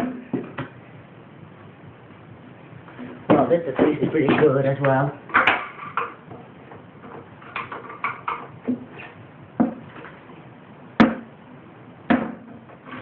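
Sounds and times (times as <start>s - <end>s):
loud sharp knock: 11.0s - 11.3s.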